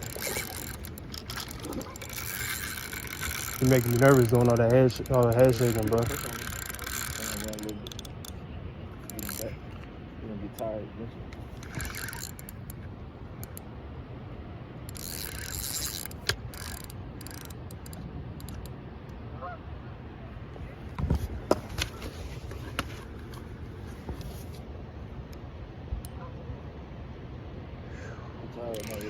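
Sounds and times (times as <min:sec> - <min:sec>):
fishing gear clicks and knocks: 0:00.0 - 0:08.4, 0:09.0 - 0:09.9, 0:11.3 - 0:13.6, 0:14.9 - 0:18.7, 0:20.8 - 0:24.6, 0:28.7 - 0:29.0
river flowing: 0:00.0 - 0:09.8.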